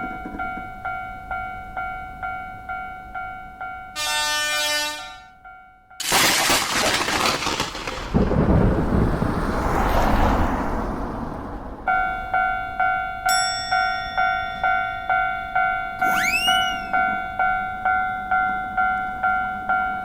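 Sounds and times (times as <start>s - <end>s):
railroad crossing bell ringing: 0.0s - 6.0s, 11.9s - 20.0s
thunder crack and rumble: 6.6s - 12.3s.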